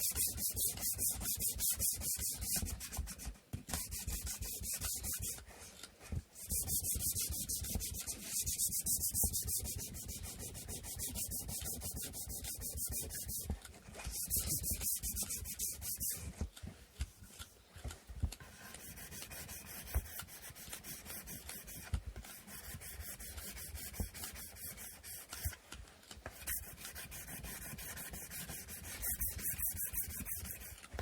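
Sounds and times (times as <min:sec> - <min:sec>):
sandpaper rubbing on wood: 0:03.8 - 0:05.4, 0:06.4 - 0:13.5, 0:14.1 - 0:16.2, 0:18.6 - 0:25.5, 0:26.4 - 0:30.8.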